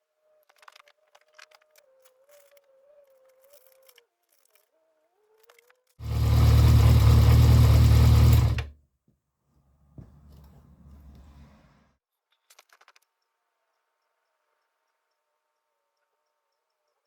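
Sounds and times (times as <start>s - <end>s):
motorcycle engine running: 6.0s - 8.7s.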